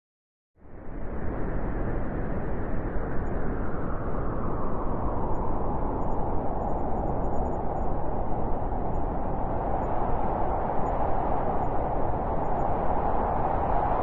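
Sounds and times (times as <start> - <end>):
howling wind: 0.6 - 14.0.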